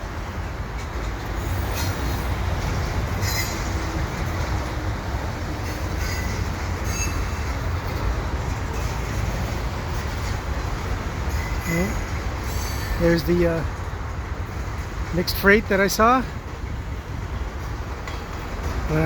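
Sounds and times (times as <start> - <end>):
freight train wheels rumbling on rails: 0.0 - 19.0
high-pitched wheel squeals: 3.2 - 3.9, 5.6 - 7.6.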